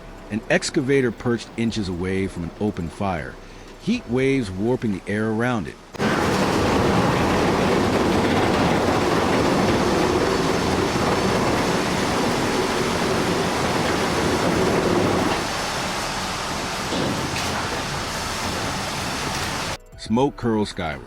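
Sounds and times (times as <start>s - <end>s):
heavy machinery rumbling and rattling: 6.0s - 19.8s.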